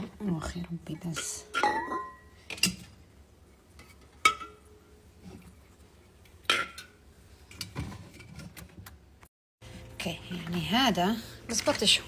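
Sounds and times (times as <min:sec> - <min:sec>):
kitchen items clinking and knocking: 0:00.9 - 0:03.0.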